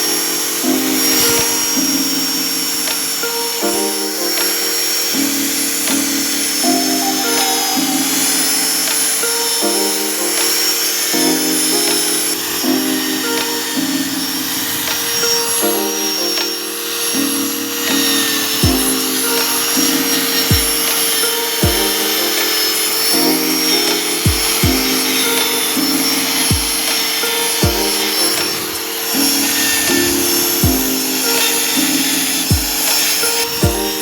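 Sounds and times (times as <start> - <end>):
music with held tones: 0.0 - 34.0
steady hiss: 0.0 - 34.0
deep drum hits: 24.3 - 25.0, 30.6 - 31.0.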